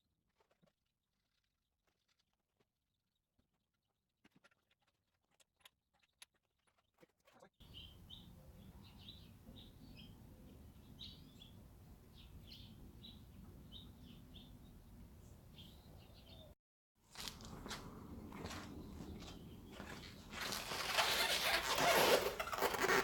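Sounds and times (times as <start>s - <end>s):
small bird chirping: 7.6s - 16.6s
outdoor background hum: 17.1s - 22.7s.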